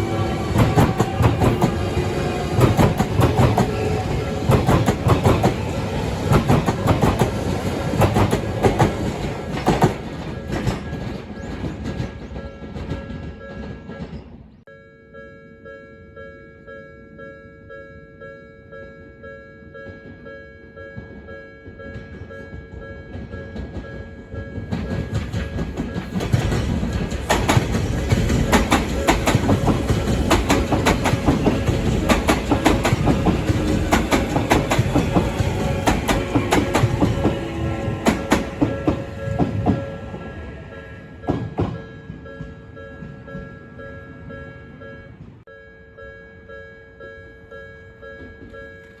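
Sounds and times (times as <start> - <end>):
train wheels clattering: 0.0 - 14.5, 20.9 - 44.4
level-crossing bell ringing: 14.7 - 26.4, 28.4 - 49.0.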